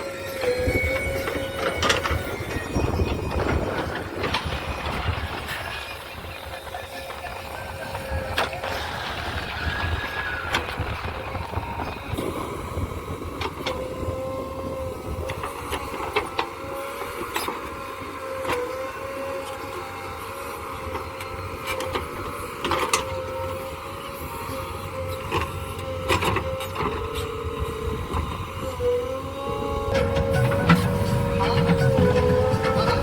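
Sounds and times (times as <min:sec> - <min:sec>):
excavator engine rumble: 0:00.0 - 0:33.0
metal clanks and knocks: 0:29.9 - 0:33.0.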